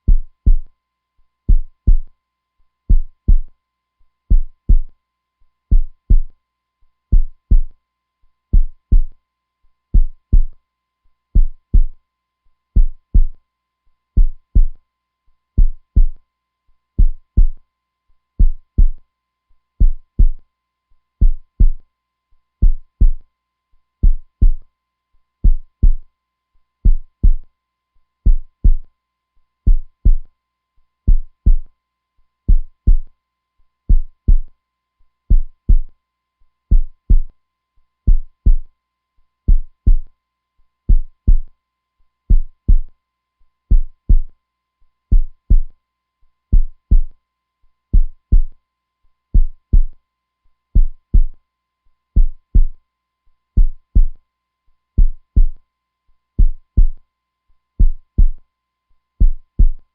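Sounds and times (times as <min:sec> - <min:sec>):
heartbeat thuds: 0:00.1 - 0:00.7, 0:01.5 - 0:02.1, 0:02.9 - 0:03.5, 0:04.3 - 0:04.9, 0:05.7 - 0:06.3, 0:07.1 - 0:07.7, 0:08.6 - 0:09.1, 0:10.0 - 0:10.5, 0:11.4 - 0:12.0, 0:12.8 - 0:13.4, 0:14.2 - 0:14.8, 0:15.6 - 0:16.2, 0:17.0 - 0:17.6, 0:18.4 - 0:19.0, 0:19.8 - 0:20.4, 0:21.2 - 0:21.8, 0:22.6 - 0:23.2, 0:24.0 - 0:24.6, 0:25.4 - 0:26.0, 0:26.9 - 0:27.4, 0:28.3 - 0:28.8, 0:29.7 - 0:30.3, 0:31.1 - 0:31.7, 0:32.5 - 0:33.1, 0:33.9 - 0:34.5, 0:35.3 - 0:35.9, 0:36.7 - 0:37.3, 0:38.1 - 0:38.7, 0:39.5 - 0:40.1, 0:40.9 - 0:41.5, 0:42.3 - 0:42.9, 0:43.7 - 0:44.3, 0:45.1 - 0:45.7, 0:46.5 - 0:47.1, 0:48.0 - 0:48.5, 0:49.4 - 0:49.9, 0:50.8 - 0:51.4, 0:52.2 - 0:52.8, 0:53.6 - 0:54.2, 0:55.0 - 0:55.6, 0:56.4 - 0:57.0, 0:57.8 - 0:58.4, 0:59.2 - 0:59.8.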